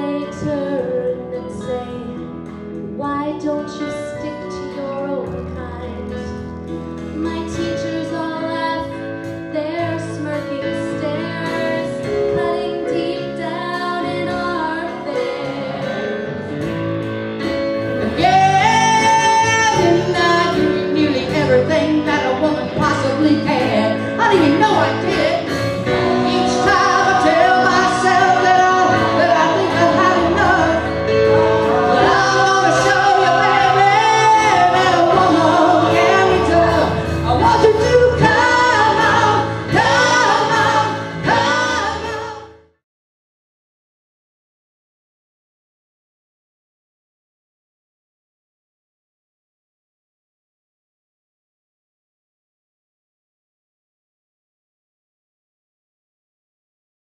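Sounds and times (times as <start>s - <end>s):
woman singing: 0.0s - 2.4s, 3.0s - 6.5s, 7.1s - 15.7s, 18.0s - 31.0s, 31.7s - 42.6s
band accompaniment: 0.2s - 42.5s.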